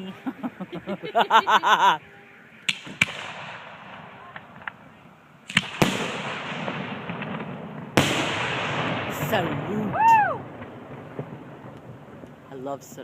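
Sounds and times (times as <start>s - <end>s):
faint crackling: 0.0s - 13.0s
firework bangs: 2.0s - 13.0s.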